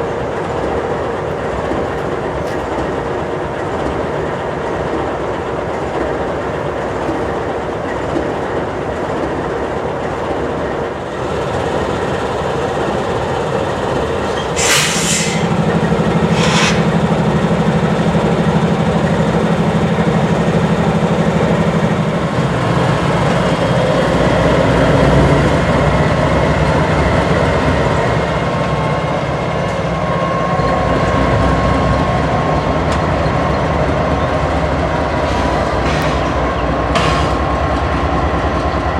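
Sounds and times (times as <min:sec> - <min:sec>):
diesel locomotive engine drone: 0:00.0 - 0:38.9
train wheels rumbling: 0:00.0 - 0:38.9
short hisses: 0:14.3 - 0:15.6, 0:16.2 - 0:17.0.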